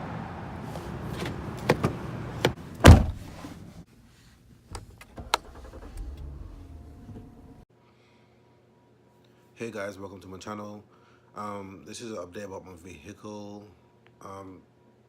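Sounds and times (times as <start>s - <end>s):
outside noise: 0.0s - 7.6s
car door clicks: 0.7s - 3.3s
car door shutting thump: 0.8s - 3.3s.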